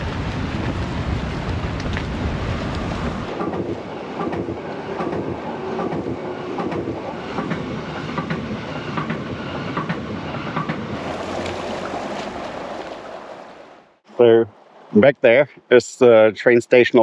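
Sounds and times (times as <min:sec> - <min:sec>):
train rumble: 0:00.0 - 0:15.5
train wheels clicking on track: 0:03.2 - 0:11.2.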